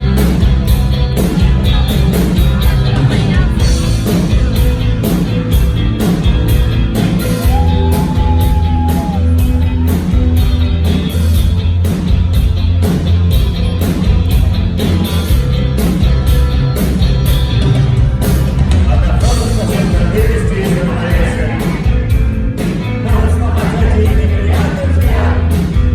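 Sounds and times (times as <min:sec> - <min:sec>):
drums striking a regular beat: 0:00.0 - 0:25.9
heavy bass: 0:00.0 - 0:25.9
rock band playing: 0:00.0 - 0:25.9.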